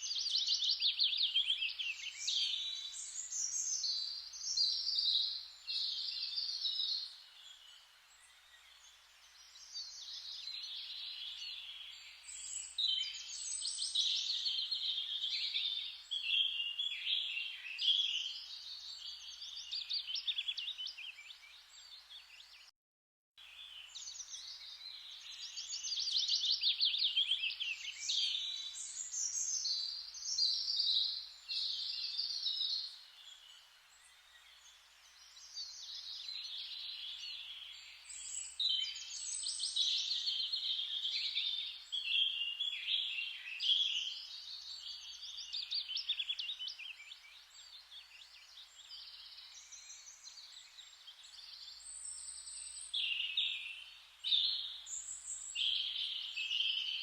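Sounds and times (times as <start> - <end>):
faint steady hiss: 0.0 - 22.5, 23.4 - 57.0
songbirds singing: 0.0 - 22.7, 23.4 - 57.0.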